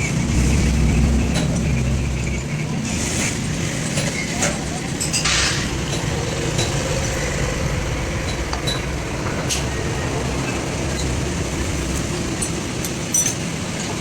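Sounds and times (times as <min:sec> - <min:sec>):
heavy vehicle engine rumbling: 0:00.0 - 0:14.0
light metallic clinks: 0:12.4 - 0:14.0.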